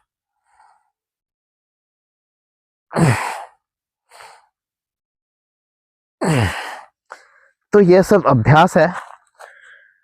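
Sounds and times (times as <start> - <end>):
loud breath: 3.0 - 4.6, 9.4 - 10.0.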